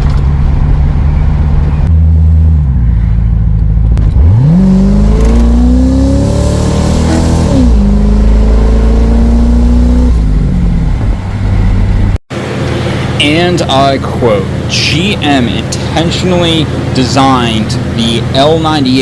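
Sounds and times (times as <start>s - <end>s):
car engine accelerating: 0.0s - 13.2s.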